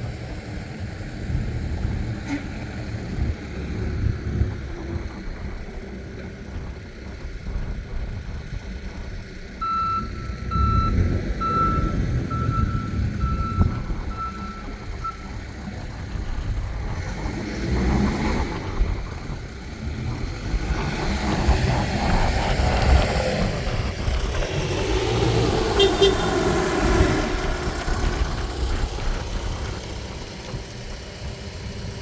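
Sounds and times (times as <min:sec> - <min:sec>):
backhoe diesel engine: 0:00.0 - 0:32.0
backup alarm beeping: 0:09.6 - 0:15.3.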